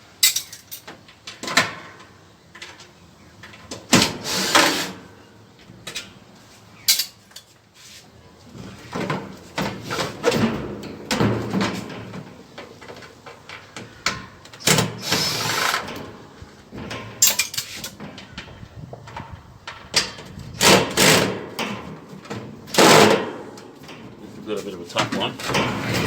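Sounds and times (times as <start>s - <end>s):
cordless drill removing screws: 14.6s - 15.9s, 20.6s - 21.3s.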